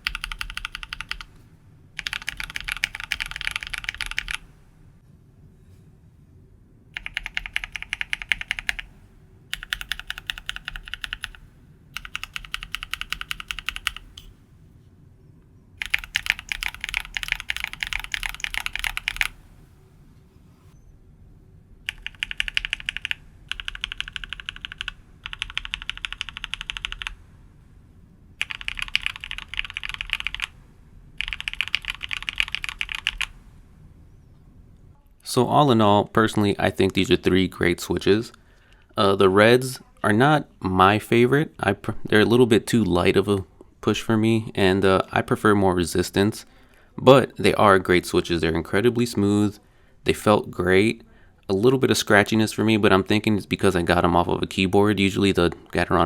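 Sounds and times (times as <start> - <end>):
mechanical keyboard clacking: 0.0 - 1.3, 2.0 - 4.4, 7.0 - 8.9, 9.5 - 11.4, 12.0 - 14.3, 15.8 - 19.3, 21.9 - 27.2, 28.4 - 30.5, 31.2 - 33.3.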